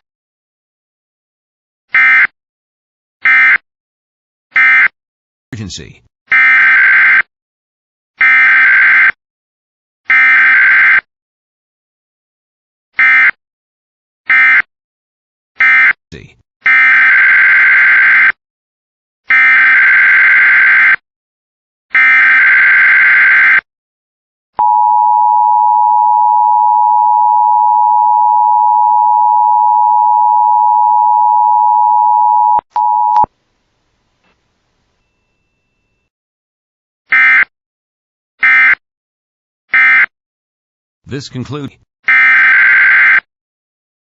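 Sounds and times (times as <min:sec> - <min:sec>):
steady attention signal tone: 0:24.6 - 0:33.3.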